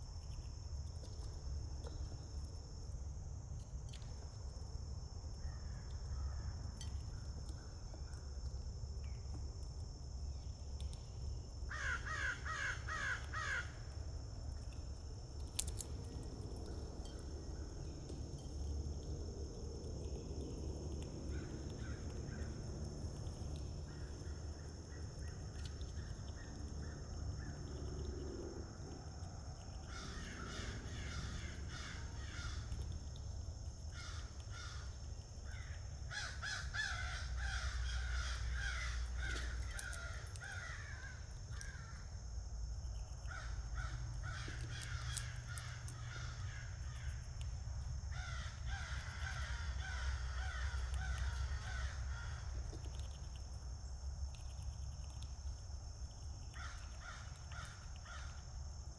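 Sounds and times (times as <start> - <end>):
high insect drone: 0.0 - 58.9.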